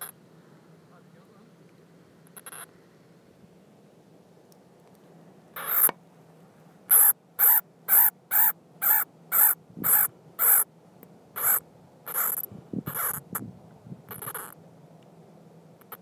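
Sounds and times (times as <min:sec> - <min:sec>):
animal harsh rasping calls: 0:02.4 - 0:02.7, 0:05.6 - 0:05.9, 0:06.9 - 0:10.7, 0:11.4 - 0:13.4, 0:14.1 - 0:14.6.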